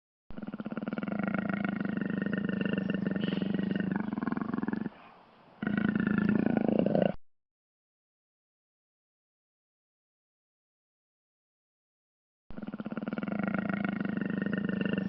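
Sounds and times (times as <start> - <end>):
jaguar growling: 0.3 - 7.2, 12.6 - 15.0.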